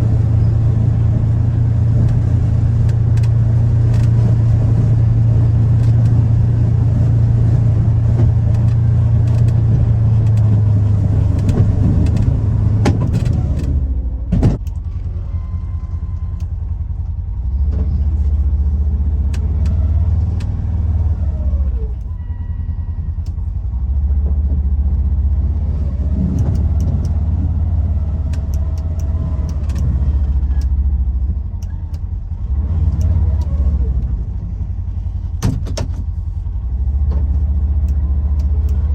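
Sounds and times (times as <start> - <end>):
utility vehicle engine running: 0.0 - 38.9
sharp click: 26.3 - 27.4, 28.2 - 30.8.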